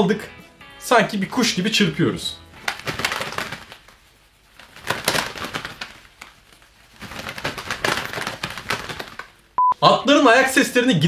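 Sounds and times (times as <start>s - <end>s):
leather gloves flapping together: 2.5s - 9.6s.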